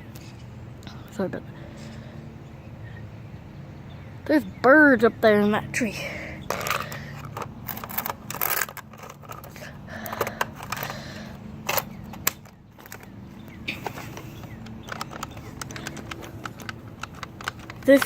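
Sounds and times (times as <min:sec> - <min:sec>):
low background hum: 0:00.0 - 0:18.0
plastic toy blaster clicks: 0:14.4 - 0:18.0.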